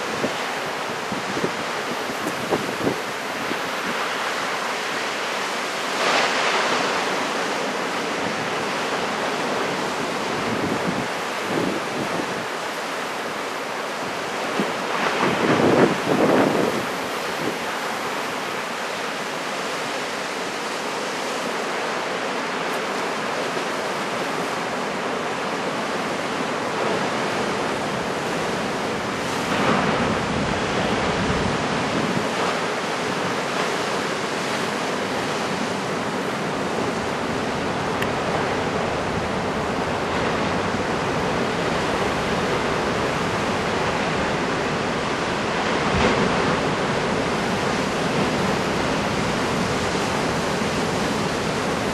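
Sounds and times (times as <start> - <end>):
wind buffeting microphone: 0.0 - 4.1, 14.5 - 17.8
heavy surf breaking: 0.0 - 51.9.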